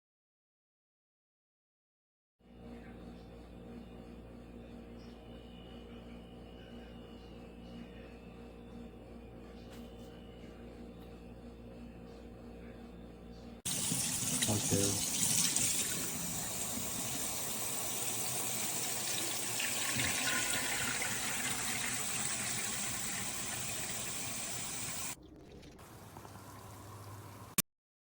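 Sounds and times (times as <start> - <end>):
water filling a container: 13.7 - 27.6.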